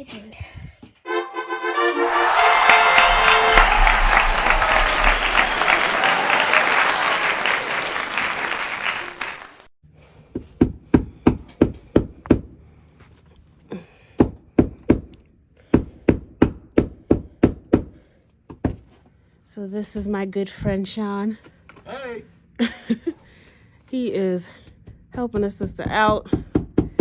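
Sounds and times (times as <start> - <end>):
brass-led music: 1.1 - 6.5.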